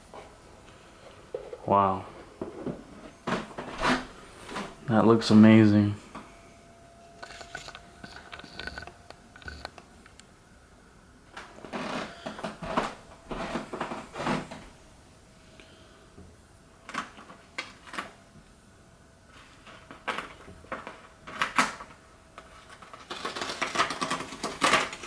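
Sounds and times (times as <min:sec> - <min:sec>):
cardboard rustling and scraping: 0:01.0 - 0:05.7, 0:07.1 - 0:09.8, 0:11.4 - 0:14.7.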